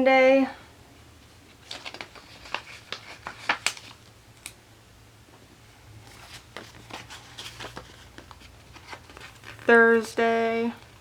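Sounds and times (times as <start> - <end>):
paper crackling and rustling: 1.5 - 4.1, 6.0 - 11.0.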